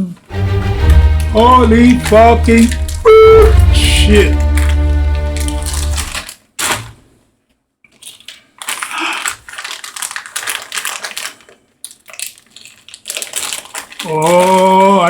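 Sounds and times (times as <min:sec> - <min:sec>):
packaging crinkles and clicks: 0:04.4 - 0:07.0, 0:07.9 - 0:15.0
packaging rustling: 0:04.4 - 0:07.1, 0:07.9 - 0:15.0.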